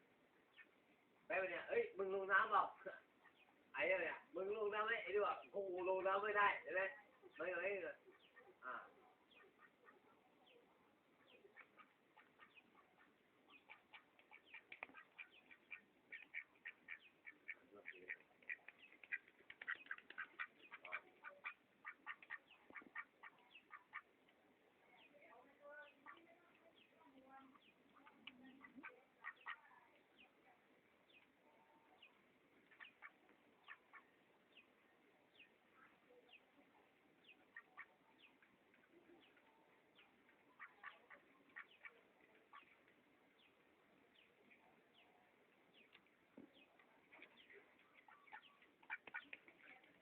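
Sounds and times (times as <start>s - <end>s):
duck quacking: 9.3s - 10.0s, 11.3s - 24.1s, 25.9s - 26.2s, 27.5s - 29.7s, 32.7s - 34.1s, 37.4s - 38.0s, 40.6s - 42.8s, 48.1s - 49.3s.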